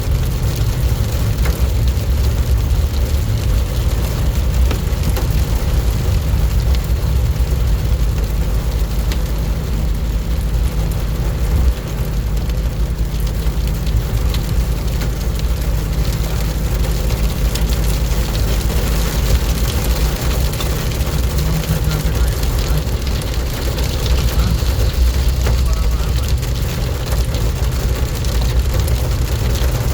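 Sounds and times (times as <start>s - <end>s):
heavy rain pouring: 0.0s - 29.9s.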